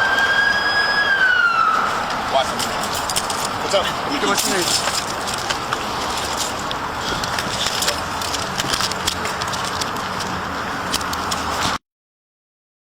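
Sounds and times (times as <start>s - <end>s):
outdoor background noise: 0.0s - 11.8s
camera microphone clicks and crackles: 2.5s - 11.8s.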